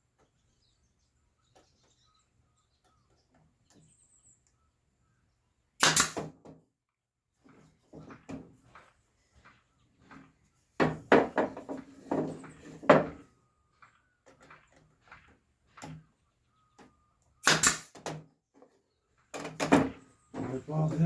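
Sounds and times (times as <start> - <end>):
wooden parts knocking and clattering: 10.8 - 13.2, 19.3 - 21.0.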